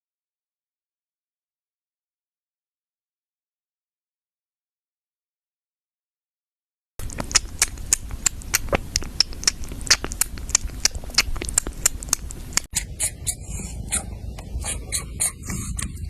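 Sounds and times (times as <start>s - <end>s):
rapid small clicks and taps: 7.0s - 12.7s.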